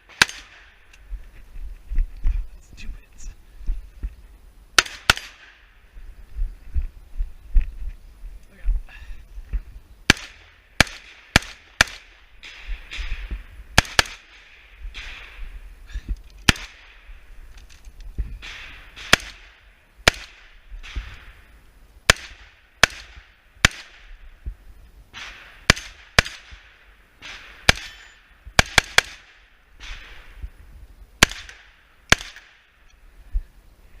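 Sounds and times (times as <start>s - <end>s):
rifle shots with echo: 0.0s - 0.9s, 4.8s - 5.7s, 10.1s - 15.5s, 16.4s - 17.1s, 18.4s - 21.4s, 22.1s - 24.3s, 25.2s - 30.4s, 31.2s - 32.8s.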